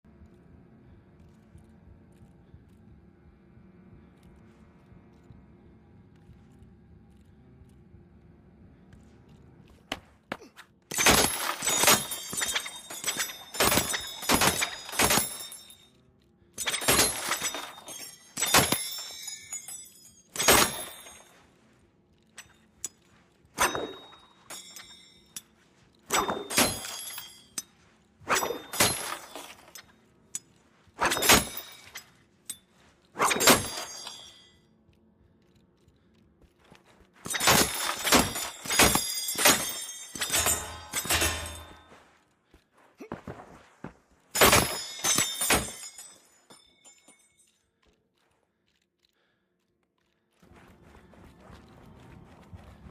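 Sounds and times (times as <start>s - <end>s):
metal throwing stars clinking: 10.9s - 15.8s, 16.6s - 21.4s, 22.3s - 34.6s, 37.2s - 42.0s, 44.3s - 47.5s.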